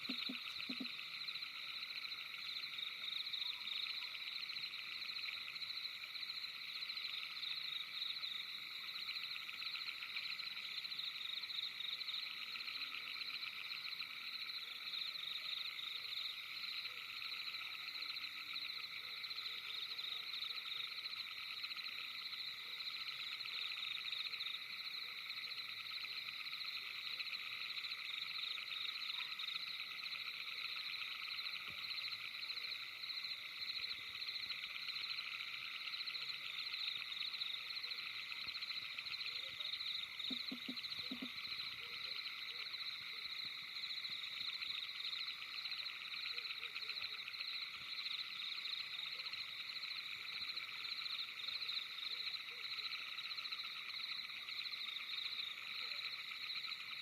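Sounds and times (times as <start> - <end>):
chorus of frogs calling: 0.0 - 57.0.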